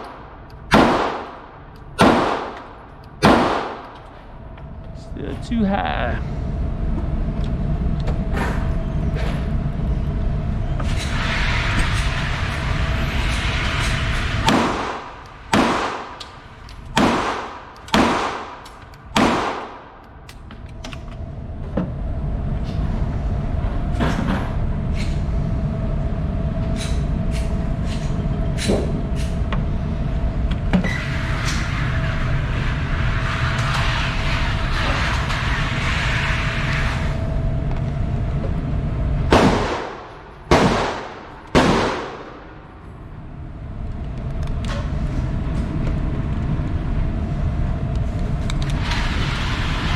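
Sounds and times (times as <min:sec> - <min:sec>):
pistol shots: 0:00.0 - 0:04.0, 0:14.4 - 0:16.3, 0:16.9 - 0:19.9, 0:39.3 - 0:42.6
steady background rush: 0:00.0 - 0:49.9.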